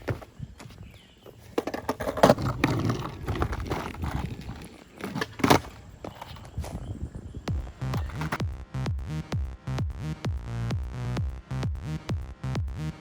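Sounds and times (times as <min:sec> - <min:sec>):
skateboard knocking and clattering: 0:00.0 - 0:08.4.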